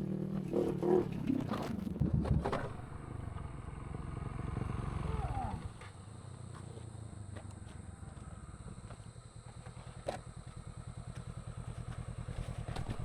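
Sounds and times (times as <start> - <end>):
motorcycle engine idling: 2.7 - 13.0.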